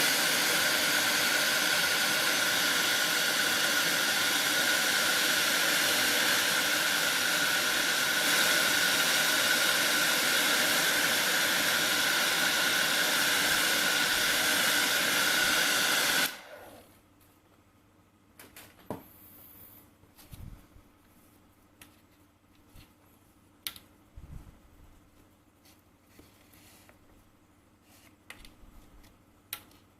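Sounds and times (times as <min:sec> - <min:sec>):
hot-air blower hissing: 0:00.0 - 0:17.0
faint clicks and handling knocks: 0:21.8 - 0:23.9.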